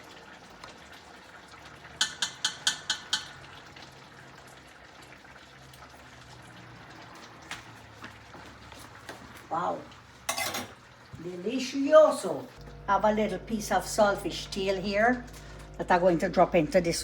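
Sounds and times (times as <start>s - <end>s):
pot simmering: 0.0s - 16.4s
utensil clinking against pot: 2.0s - 3.4s, 10.3s - 10.8s.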